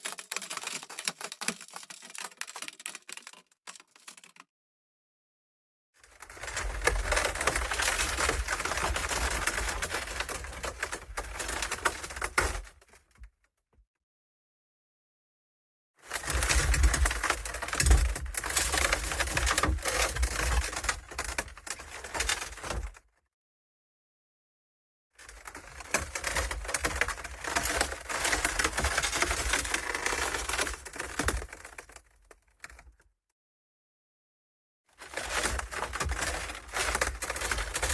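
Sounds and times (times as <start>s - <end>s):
crackling and grinding friction: 6.0s - 13.2s, 16.0s - 23.0s, 25.2s - 32.8s, 35.0s - 37.9s.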